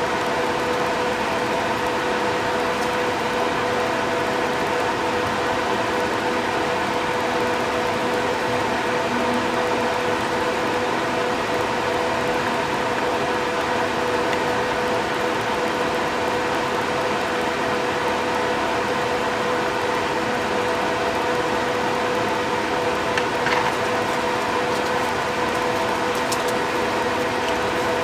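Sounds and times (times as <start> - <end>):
ventilation fan humming: 0.0 - 28.0.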